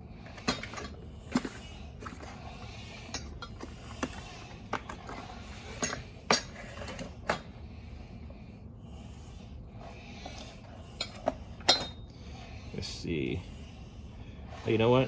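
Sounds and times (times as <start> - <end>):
metal wrenches clinking: 11.0 - 12.0.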